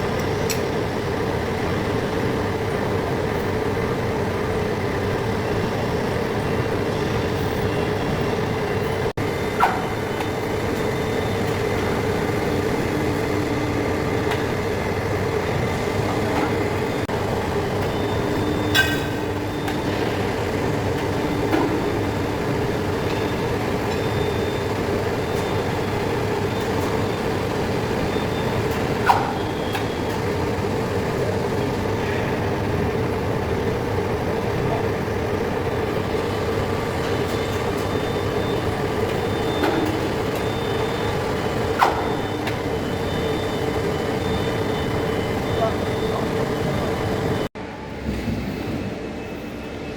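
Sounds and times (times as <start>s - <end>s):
lathe running: 9.2s - 47.5s.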